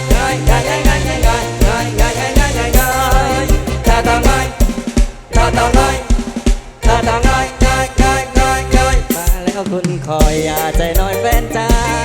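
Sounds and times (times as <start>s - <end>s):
wavering melodic lead line: 0.0s - 9.1s, 10.4s - 12.0s
heavy bass drum beat: 0.0s - 12.0s
live band playing: 0.0s - 12.0s.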